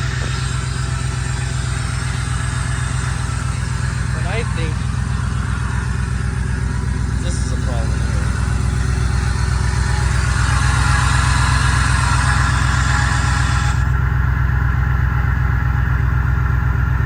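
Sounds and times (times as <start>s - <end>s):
engine idling: 0.0s - 17.0s.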